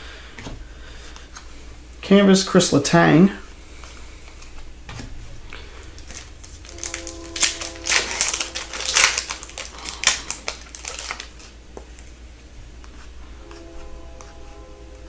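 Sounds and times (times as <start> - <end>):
card packs crinkling: 5.5 - 12.0.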